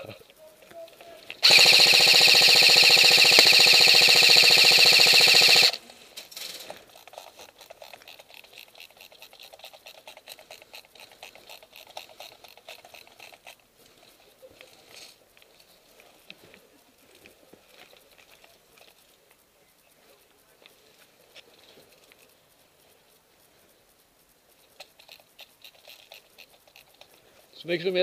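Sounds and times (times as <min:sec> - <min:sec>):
airsoft gun full-auto burst: 0:01.4 - 0:05.9
faint automatic airsoft fire: 0:01.4 - 0:06.0.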